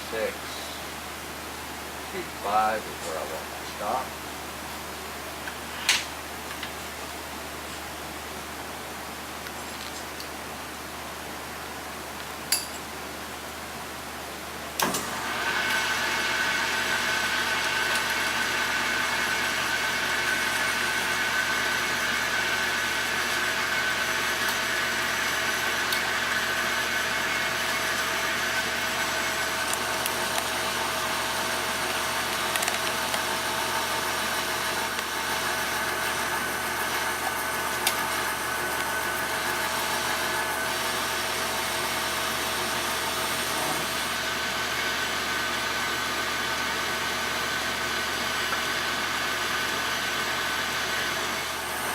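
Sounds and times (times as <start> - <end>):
metal lathe running with whine: 15.0 - 51.9.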